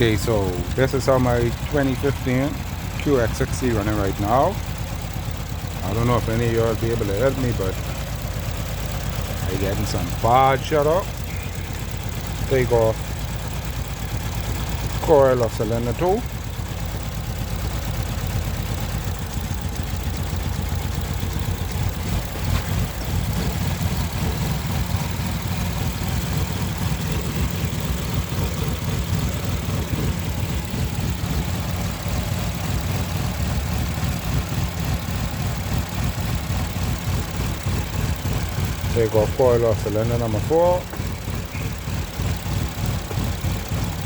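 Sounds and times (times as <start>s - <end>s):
man talking: 0.0s - 4.6s, 5.8s - 7.8s, 9.4s - 11.5s, 12.4s - 13.0s, 15.0s - 16.3s, 38.8s - 41.7s
engine idling roughly: 0.0s - 44.0s.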